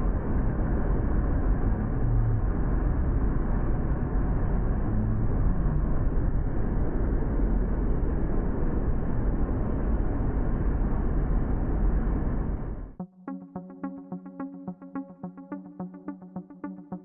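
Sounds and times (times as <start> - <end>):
jet aircraft in flight: 0.0 - 13.0.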